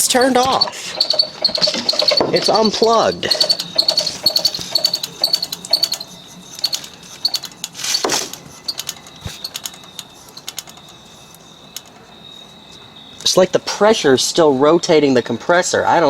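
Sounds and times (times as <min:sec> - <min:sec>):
compressor clicking and rattling: 0:00.0 - 0:12.3.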